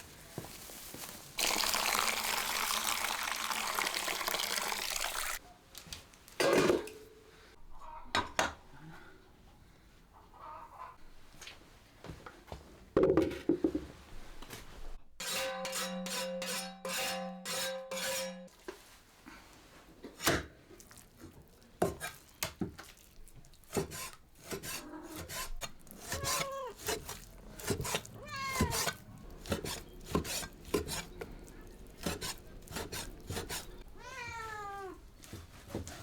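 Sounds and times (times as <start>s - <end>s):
kitchen knocks and scraping: 6.4s - 7.1s, 13.0s - 14.1s, 21.2s - 22.9s, 23.7s - 33.9s
cat meowing: 26.0s - 26.8s, 28.1s - 29.1s, 33.8s - 35.0s.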